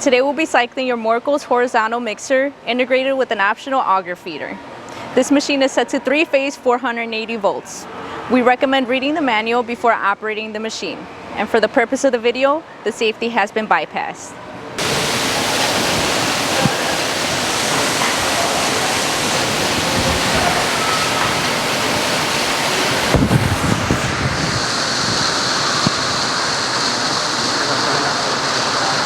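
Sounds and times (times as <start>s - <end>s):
steady high whine: 14.6s - 29.0s
mixer machine running: 14.8s - 29.0s.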